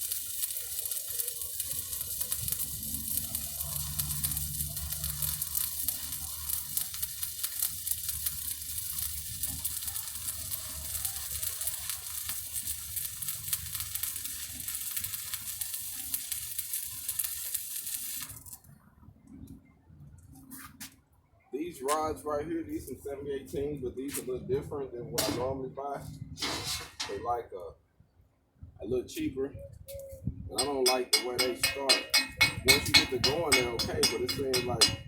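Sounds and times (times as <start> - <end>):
welding arc crackling: 0.0 - 18.6, 26.4 - 27.2, 30.6 - 35.0.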